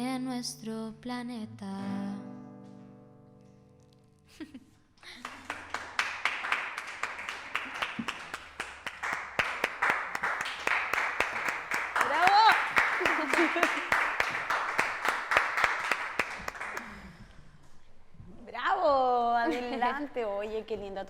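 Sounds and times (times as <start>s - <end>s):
audience clapping: 5.0s - 17.3s.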